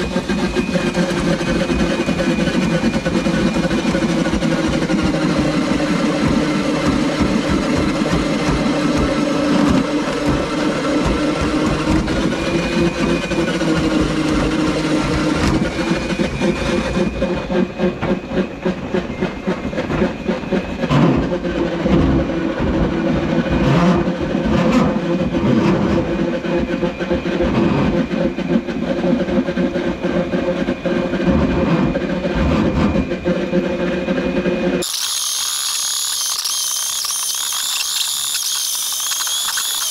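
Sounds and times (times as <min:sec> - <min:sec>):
drain auger motor running: 0:00.0 - 0:17.3, 0:34.8 - 0:39.9
high motor whine: 0:00.0 - 0:24.4, 0:34.1 - 0:39.9.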